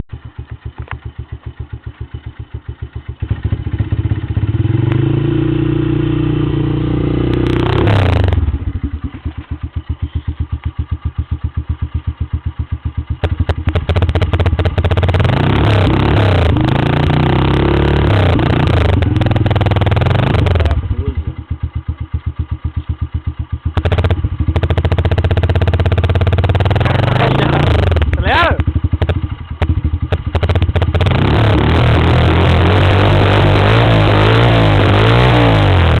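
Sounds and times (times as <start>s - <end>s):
motorcycle engine idling and revving: 0.0s - 36.0s.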